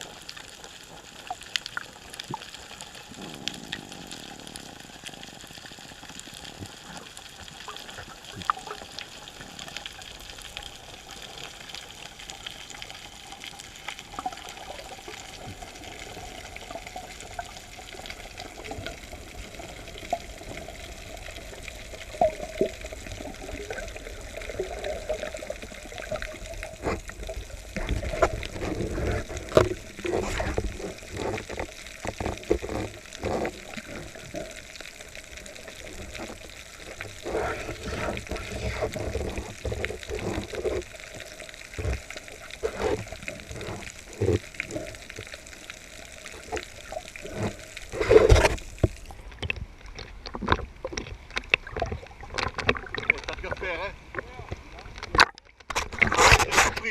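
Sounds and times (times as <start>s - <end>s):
clicks and crackles: 0.0s - 56.9s
low rumbling water movement: 0.0s - 56.9s
underwater hiss: 2.1s - 12.0s, 12.6s - 49.1s.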